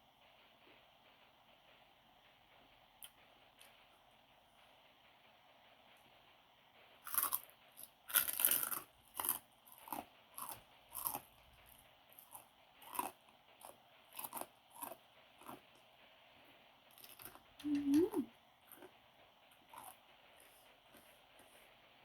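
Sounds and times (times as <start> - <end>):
person chewing crunchy food: 7.0 - 15.8, 16.9 - 19.0, 19.6 - 21.6.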